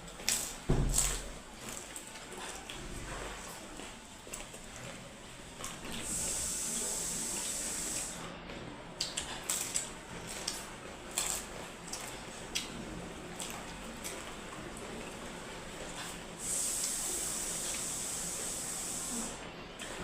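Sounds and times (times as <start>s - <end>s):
crisp food being chewed: 0.0s - 6.0s, 8.5s - 16.1s.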